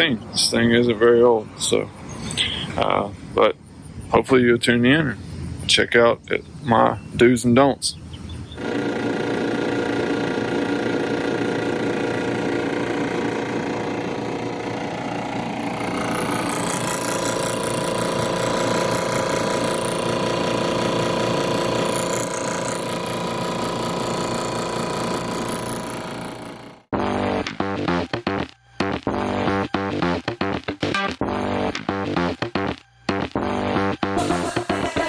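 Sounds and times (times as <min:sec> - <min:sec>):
machine pulsing hum: 0:08.6 - 0:35.0.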